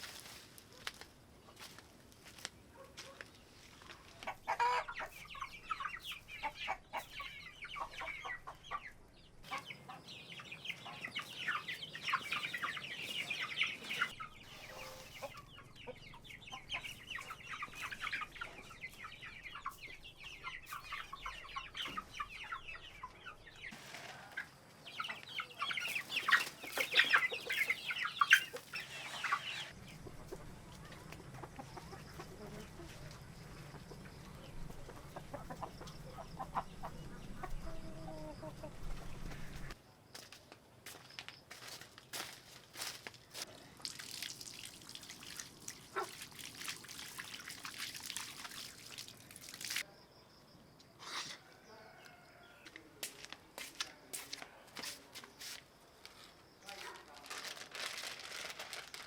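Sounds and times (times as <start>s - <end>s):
chickens clucking: 3.0s - 39.8s, 45.8s - 46.3s.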